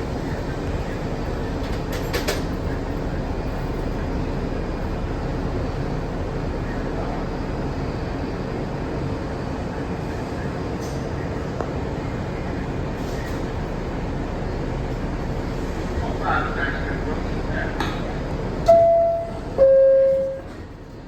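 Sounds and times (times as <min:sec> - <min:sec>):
subway train wheels rumbling on rail: 0:00.0 - 0:21.0.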